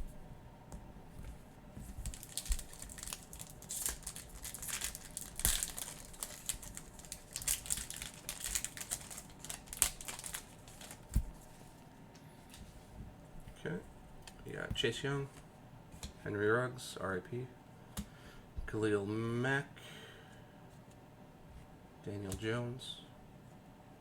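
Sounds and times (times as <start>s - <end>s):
foil wrapper crinkling: 1.8s - 11.5s.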